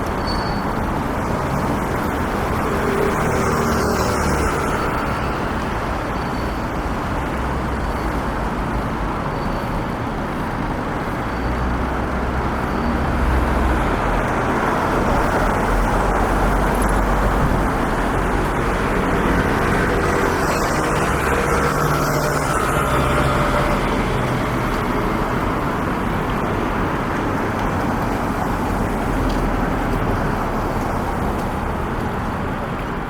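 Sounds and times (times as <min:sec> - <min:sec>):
road traffic noise: 0:00.0 - 0:33.0.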